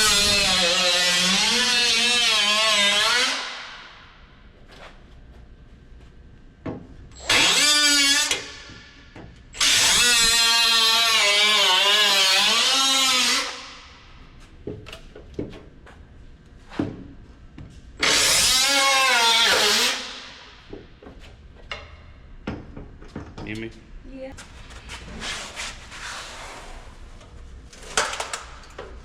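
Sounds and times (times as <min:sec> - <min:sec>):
power tool cutting sheet metal: 0:00.0 - 0:03.9, 0:07.2 - 0:08.7, 0:09.6 - 0:13.8, 0:18.0 - 0:20.5.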